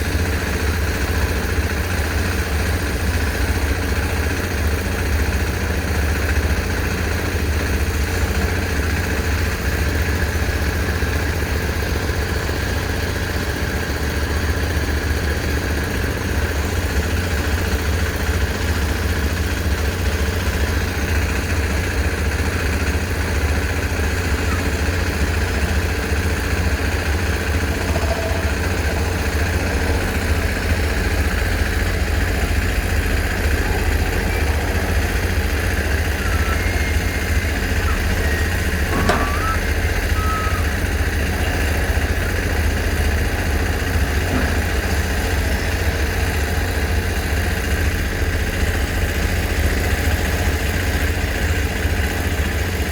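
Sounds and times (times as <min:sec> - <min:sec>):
heavy machine engine droning: 0:00.0 - 0:52.9.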